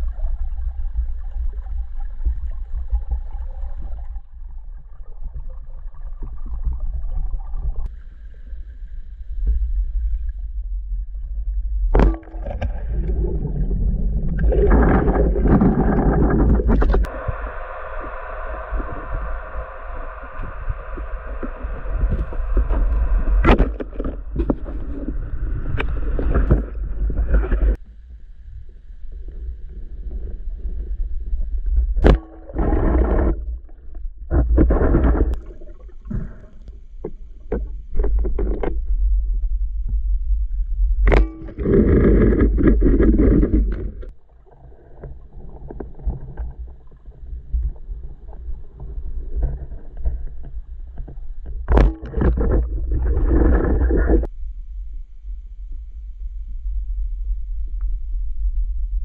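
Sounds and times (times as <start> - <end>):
bubbling underwater: 0.0 - 7.9, 10.0 - 17.4
underwater low rumble: 0.0 - 59.0.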